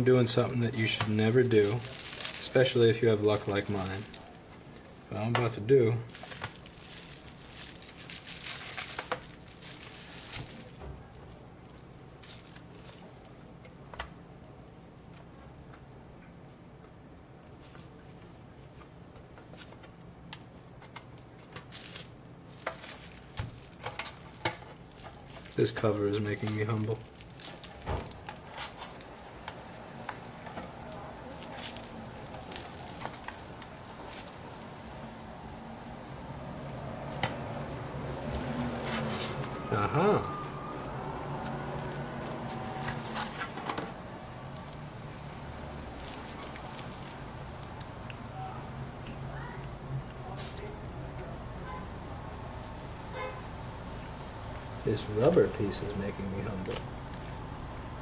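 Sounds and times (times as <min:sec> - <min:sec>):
small clicks and rustling: 0:00.9 - 0:04.9, 0:06.1 - 0:15.9, 0:17.6 - 0:25.7, 0:26.4 - 0:35.1, 0:45.5 - 0:49.3.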